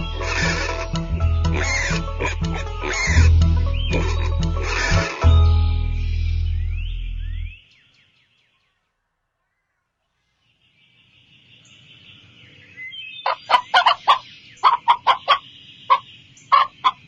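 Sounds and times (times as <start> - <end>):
low animal call: 0.0 - 5.3
chickens clucking: 0.0 - 5.4, 13.3 - 17.0
birds chirping faintly: 0.0 - 17.0.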